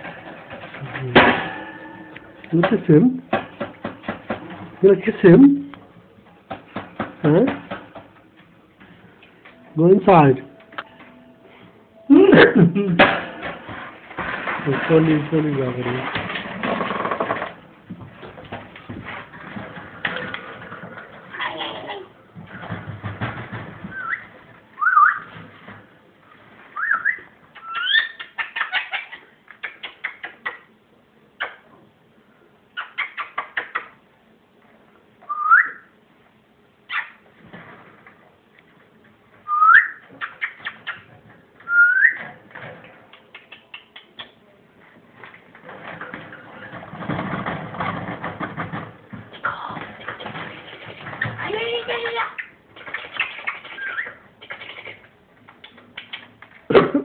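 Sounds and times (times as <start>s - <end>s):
parakeet whistles and chattering: 23.9s - 25.3s, 26.8s - 30.6s, 32.8s - 33.9s, 35.3s - 35.9s, 39.5s - 41.1s, 41.7s - 42.2s, 52.2s - 56.3s.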